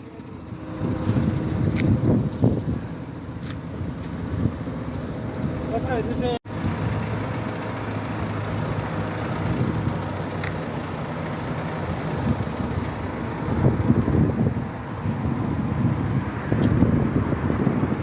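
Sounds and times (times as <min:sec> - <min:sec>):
road traffic rumble: 0:00.0 - 0:18.0.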